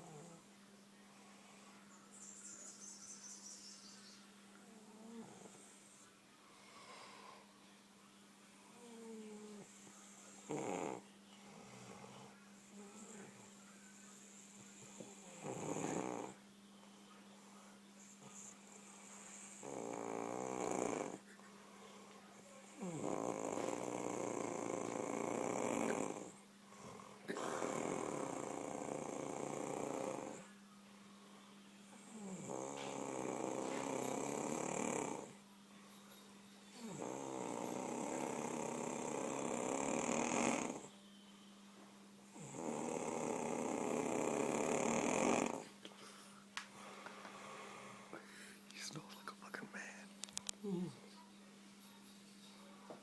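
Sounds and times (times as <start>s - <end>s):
woman snoring: 10.4s - 13.4s, 14.8s - 16.4s, 18.4s - 21.3s, 22.5s - 30.5s, 32.0s - 35.4s, 36.7s - 40.9s, 42.3s - 45.8s, 50.6s - 51.0s.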